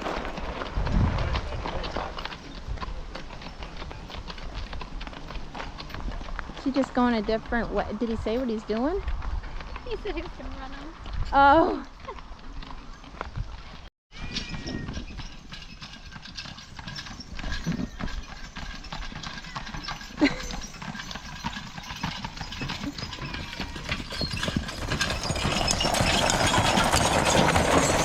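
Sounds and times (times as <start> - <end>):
horse hoofbeats: 0.0 - 28.0
cart rattling: 11.5 - 28.0.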